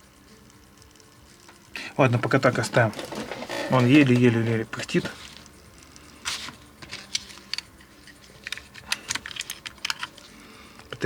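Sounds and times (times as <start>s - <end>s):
small hard objects clicking: 0.5s - 11.0s.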